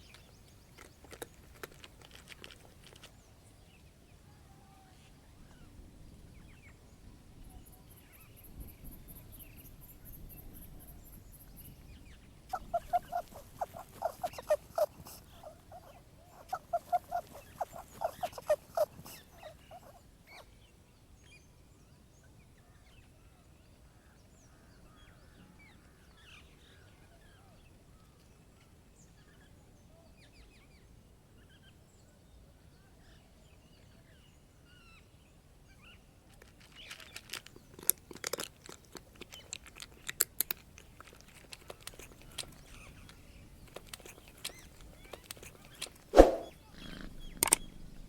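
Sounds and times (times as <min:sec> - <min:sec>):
crunching clicks and knocks: 0:00.0 - 0:03.1, 0:36.4 - 0:46.1
faint bird chirps: 0:07.4 - 0:20.5.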